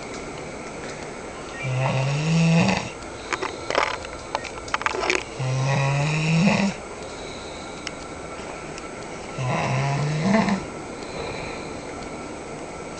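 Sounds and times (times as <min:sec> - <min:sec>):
man snoring loudly: 0:01.6 - 0:03.0, 0:05.4 - 0:06.8, 0:09.4 - 0:10.7
clicks: 0:03.0 - 0:05.3, 0:07.8 - 0:08.1.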